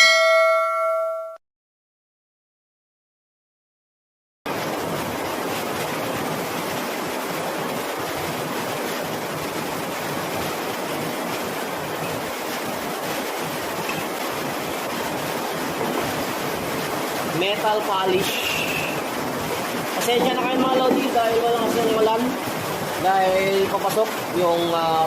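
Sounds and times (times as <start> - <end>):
heavy rain falling: 4.5 - 25.0.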